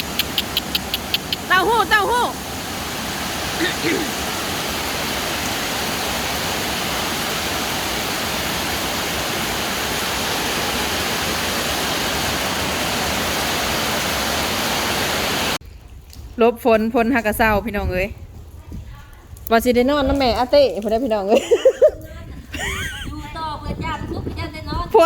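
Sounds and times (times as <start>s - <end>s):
water rushing: 0.0s - 15.6s.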